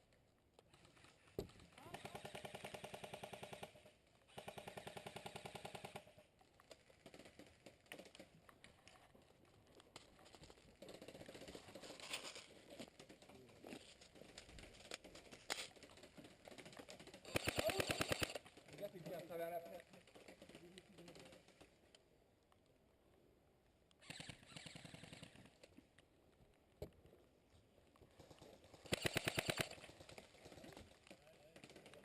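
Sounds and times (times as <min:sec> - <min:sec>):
airsoft gun full-auto bursts: 0:01.8 - 0:06.2, 0:17.2 - 0:18.4, 0:24.0 - 0:25.5, 0:28.8 - 0:29.9.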